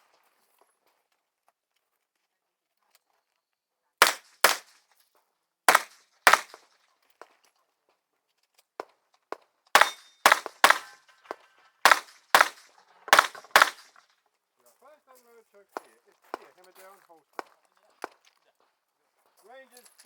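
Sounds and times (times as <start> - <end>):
revolver shots: 4.0 - 4.7, 5.7 - 6.6, 9.8 - 11.0, 11.9 - 14.0.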